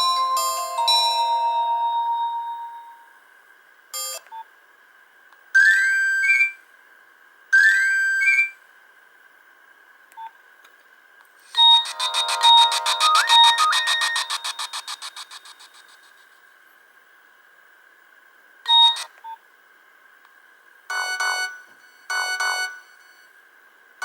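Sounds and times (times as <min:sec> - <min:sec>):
phone ringtone beeps: 0:11.6 - 0:15.3.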